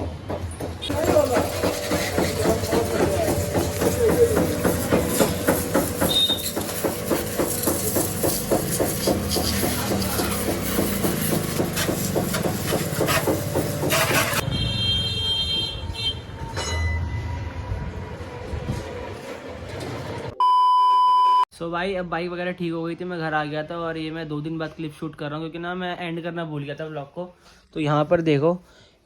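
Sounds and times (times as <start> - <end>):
machine chugging with hiss: 0.8 - 14.4.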